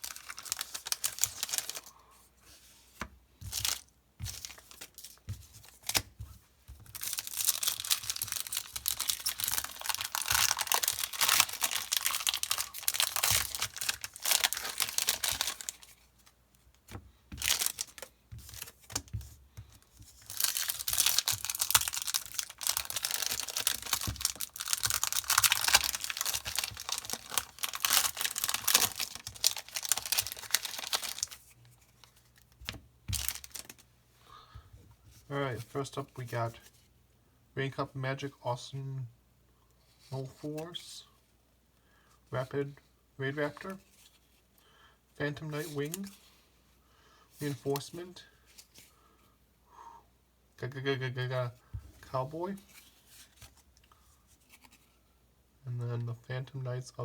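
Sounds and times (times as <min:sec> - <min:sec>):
foil wrappers torn and crinkled: 0:00.0 - 0:01.8, 0:06.9 - 0:15.9, 0:17.4 - 0:18.8, 0:20.2 - 0:31.5, 0:33.1 - 0:33.8.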